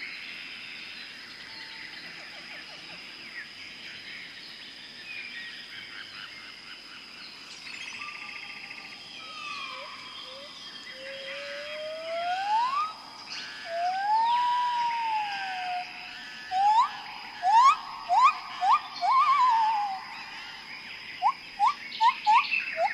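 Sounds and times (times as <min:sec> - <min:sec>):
bird calls and chirps: 0:00.0 - 0:22.9
insect drone: 0:00.0 - 0:22.9
loud gliding whistles: 0:09.2 - 0:22.9.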